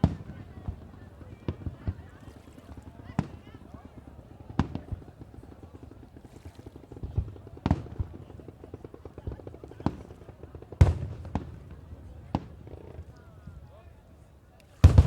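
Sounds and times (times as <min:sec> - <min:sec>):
fireworks bangs: 0:14.8 - 0:15.0
fireworks crackling: 0:14.8 - 0:15.0.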